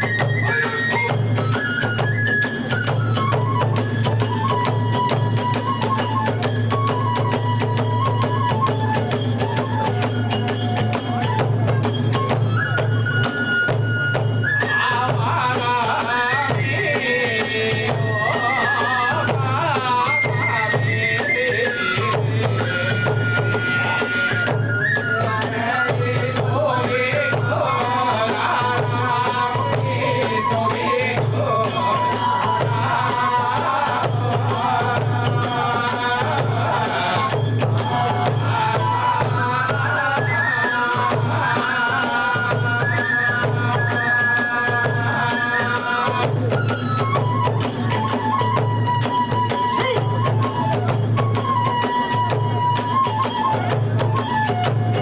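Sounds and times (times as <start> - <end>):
large drum beats: 0.0 - 14.5
bamboo flute melody: 0.0 - 55.0.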